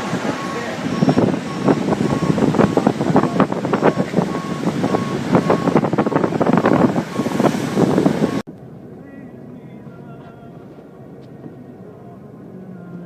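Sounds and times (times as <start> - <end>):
wind buffeting microphone: 0.0 - 8.4.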